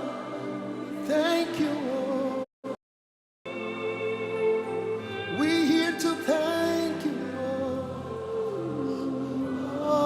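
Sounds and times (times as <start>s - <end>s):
person singing: 3.5s - 10.0s.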